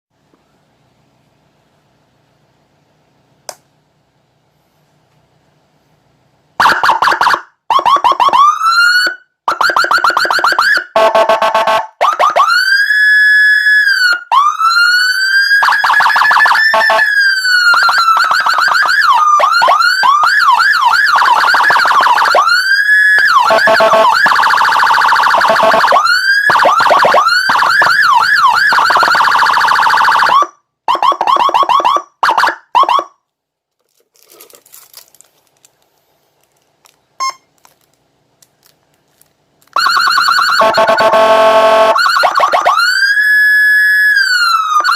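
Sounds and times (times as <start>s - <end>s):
electronic siren wailing and yelping: 6.6s - 33.1s, 39.8s - 44.9s.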